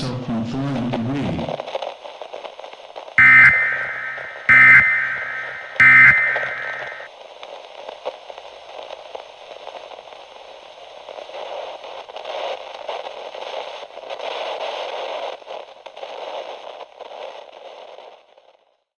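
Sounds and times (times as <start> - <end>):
crackles and pops: 1.4 - 18.8
radio static hiss: 3.2 - 7.1.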